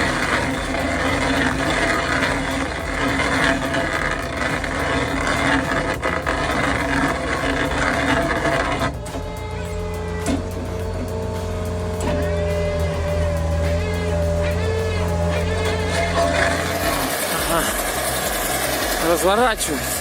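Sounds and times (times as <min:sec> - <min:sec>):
stump grinder grinding: 0:00.0 - 0:20.0.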